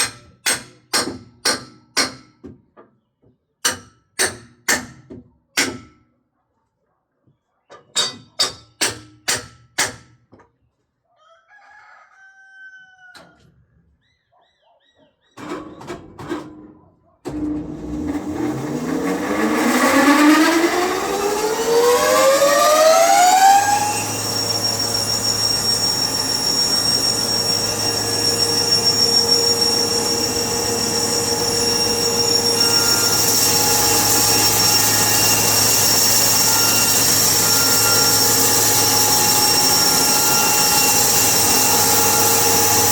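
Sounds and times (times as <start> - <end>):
motor whine spinning up: 17.6 - 42.9.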